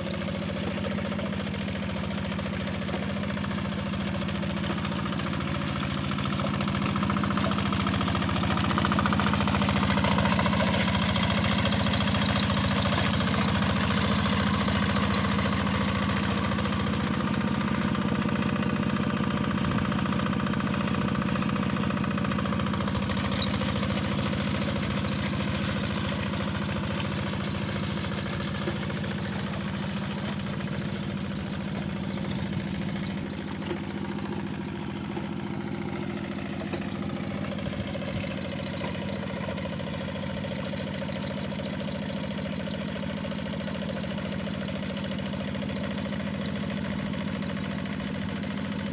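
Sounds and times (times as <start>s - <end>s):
diesel engine running steadily: 0.0s - 48.9s.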